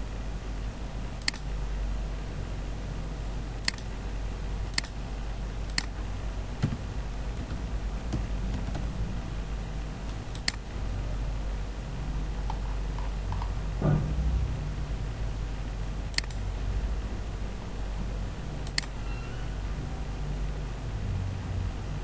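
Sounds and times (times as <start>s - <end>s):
low background hum: 0.0s - 22.0s
sharp mouse clicks: 1.2s - 1.5s, 3.6s - 3.9s, 4.7s - 5.0s, 5.7s - 6.0s, 10.3s - 10.6s, 16.1s - 16.4s, 18.6s - 19.0s.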